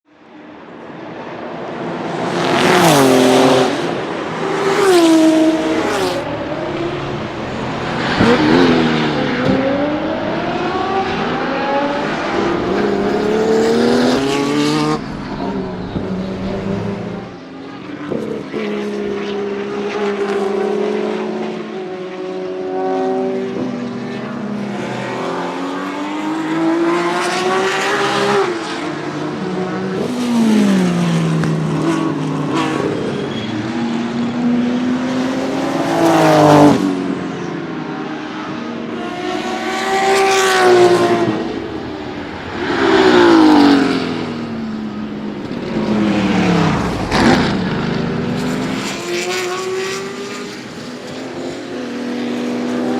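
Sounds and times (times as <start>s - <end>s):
race car passing by: 0.9s - 52.9s
race car engine running hard: 3.9s - 21.2s, 37.1s - 52.9s.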